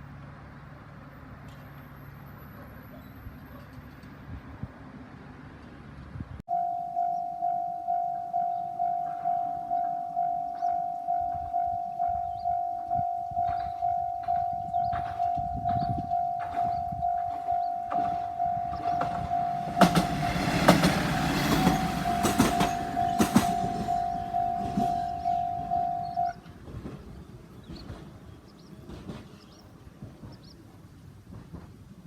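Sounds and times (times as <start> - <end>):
diesel railcar rumbling: 0.0 - 32.0
level crossing alarm clanging: 6.5 - 26.5
wheels clacking over rail joints: 13.4 - 32.0.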